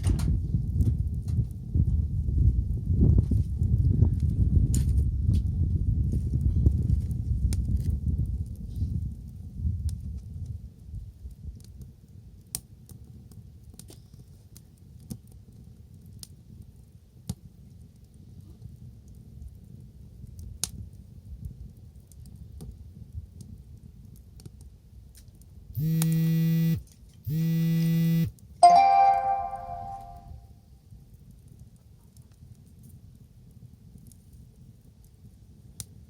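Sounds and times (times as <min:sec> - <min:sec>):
bonfire crackling: 0:00.3 - 0:25.7, 0:30.7 - 0:36.0
loud held tones: 0:25.8 - 0:30.3.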